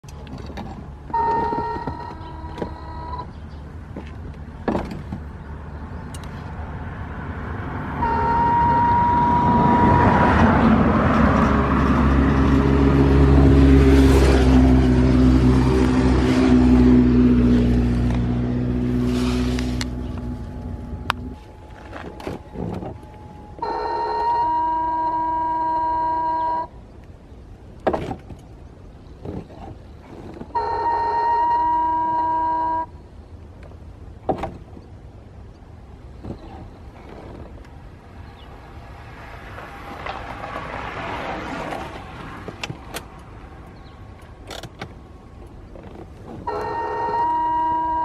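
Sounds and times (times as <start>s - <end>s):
high whistle from scooter: 8.0s - 10.4s, 30.6s - 32.9s, 46.5s - 48.0s.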